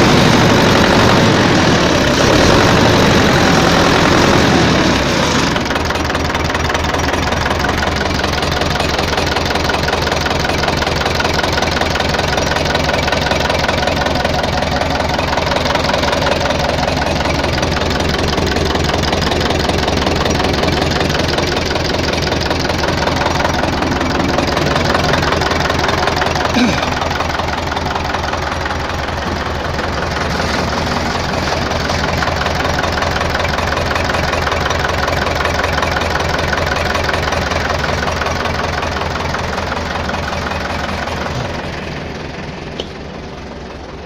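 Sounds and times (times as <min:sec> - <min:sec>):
tractor diesel engine idling: 0:00.0 - 0:44.0.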